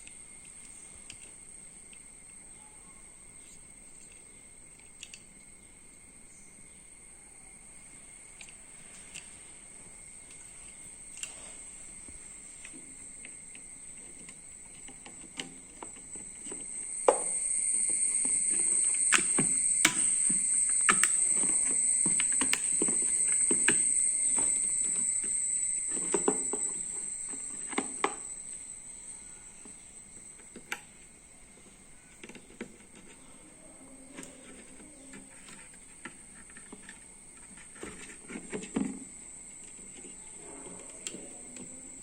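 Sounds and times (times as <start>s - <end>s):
high-pitched drone: 16.2s - 29.6s.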